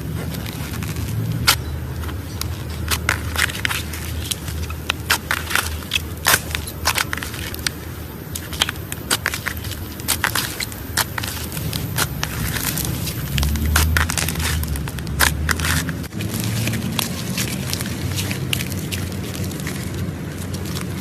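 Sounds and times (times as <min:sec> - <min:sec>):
steady low hum: 0:00.0 - 0:21.0
slime crackling and popping: 0:00.2 - 0:21.0.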